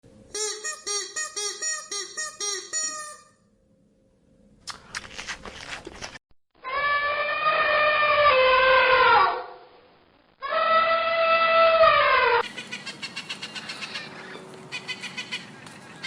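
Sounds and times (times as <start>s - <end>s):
scratchy rustle: 5.0s - 6.2s
long drawn-out animal cries: 6.6s - 9.6s, 10.4s - 15.4s.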